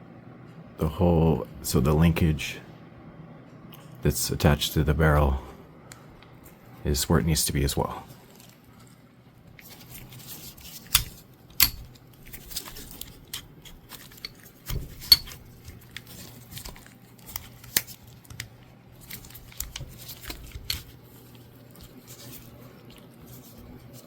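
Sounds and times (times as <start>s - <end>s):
metal pistol parts clicking: 10.0s - 21.4s.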